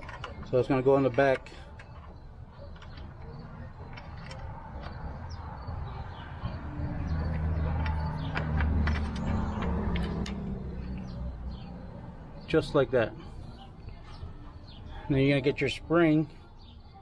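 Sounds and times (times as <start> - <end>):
metal clicks and scrapes: 0.0 - 5.2, 6.4 - 11.2.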